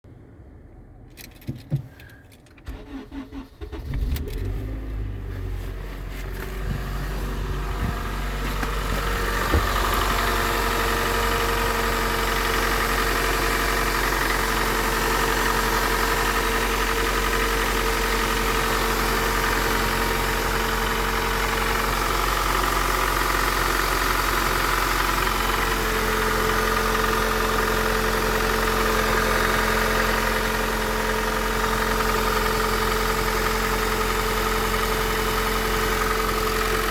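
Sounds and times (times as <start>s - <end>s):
car engine starting and idling: 0.2s - 36.9s
engine knock: 7.6s - 36.9s.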